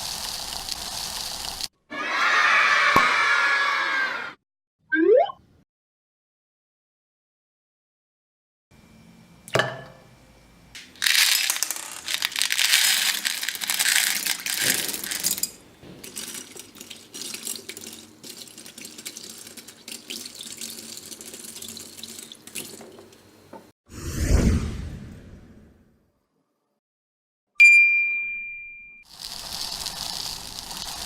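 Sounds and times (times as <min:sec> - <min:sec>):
beads pouring and rattling: 0:11.0 - 0:19.5, 0:29.1 - 0:31.0.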